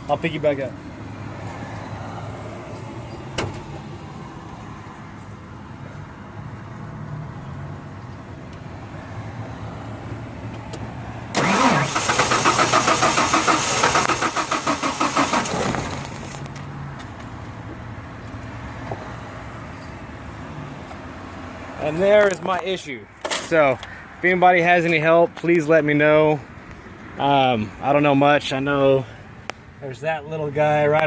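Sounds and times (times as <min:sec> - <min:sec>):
starter cranking engine: 0:11.4 - 0:16.2.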